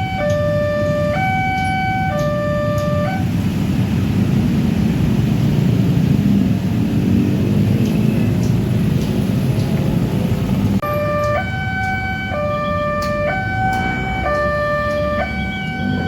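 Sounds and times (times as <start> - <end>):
level crossing siren: 0.0 - 3.4, 10.8 - 16.0
passing vehicles rumbling: 0.0 - 16.0.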